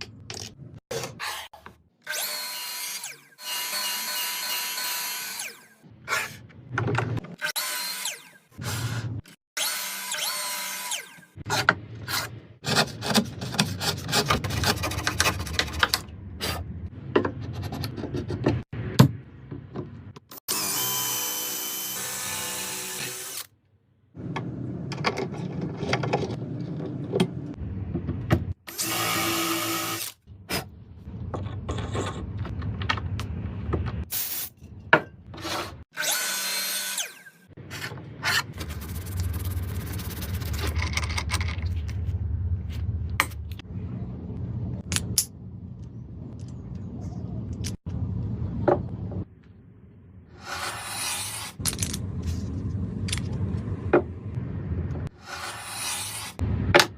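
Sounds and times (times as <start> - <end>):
power tools cutting wood: 2.1 - 6.3, 7.4 - 8.9, 9.6 - 11.4, 20.5 - 23.5, 28.7 - 30.2, 35.9 - 37.5, 50.4 - 51.6, 55.1 - 56.4.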